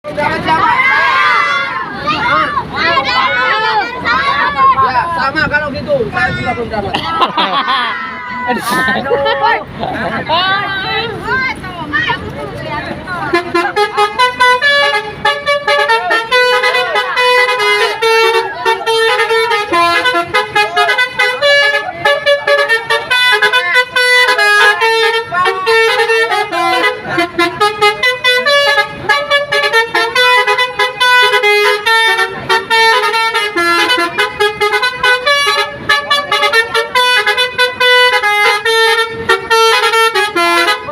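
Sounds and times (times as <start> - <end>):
bus horn playing melody: 13.2 - 40.9.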